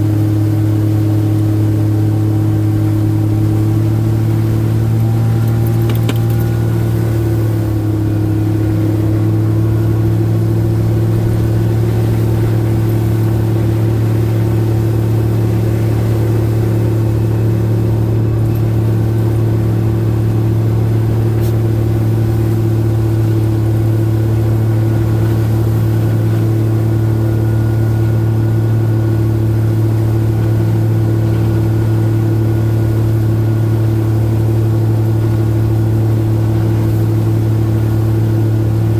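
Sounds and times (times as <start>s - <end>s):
car engine and road drone: 2.6s - 27.1s.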